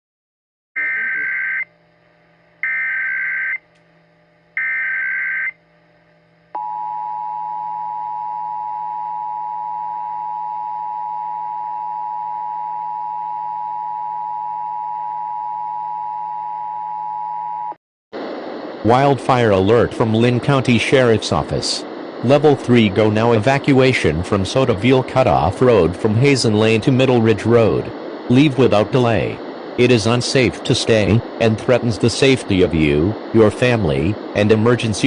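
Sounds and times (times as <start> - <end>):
two-tone alarm: 0.8 - 1.8, 2.6 - 3.7, 4.6 - 5.7, 6.5 - 17.8.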